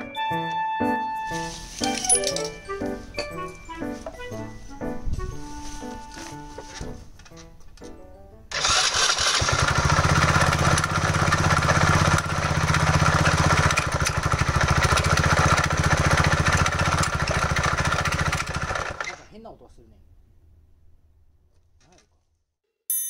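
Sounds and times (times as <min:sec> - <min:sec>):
motorcycle engine running: 0:08.5 - 0:19.2.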